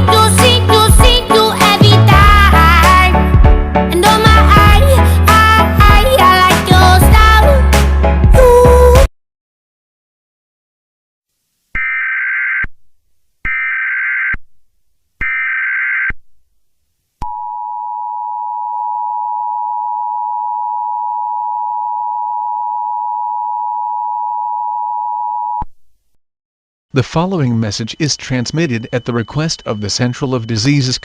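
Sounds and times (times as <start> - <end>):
steady two-tone beep: 27.4 - 31.0.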